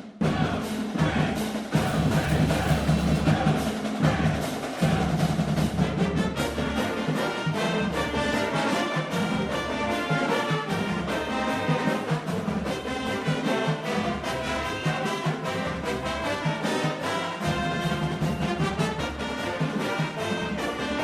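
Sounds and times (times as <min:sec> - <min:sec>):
drum beats: 0:00.0 - 0:21.0
brass section playing: 0:01.7 - 0:03.6, 0:06.2 - 0:21.0.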